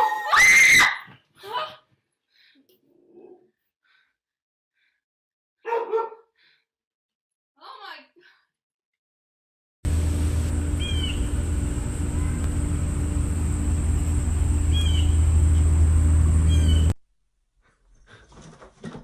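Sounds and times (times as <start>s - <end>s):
loud low rumble: 9.9s - 17.0s.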